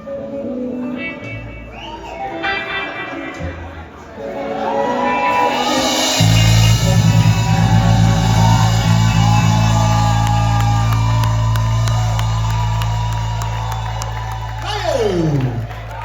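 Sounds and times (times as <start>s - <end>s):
bass note ringing: 6.2s - 14.6s.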